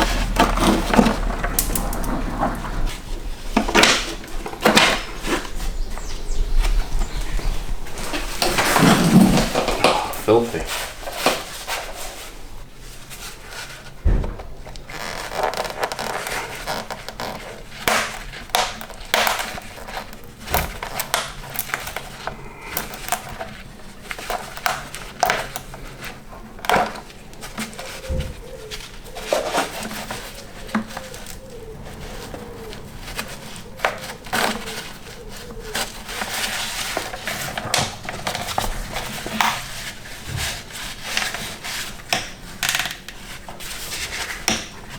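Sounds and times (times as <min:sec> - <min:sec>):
hand tools clicking and knocking: 0:00.0 - 0:02.7, 0:08.4 - 0:11.6.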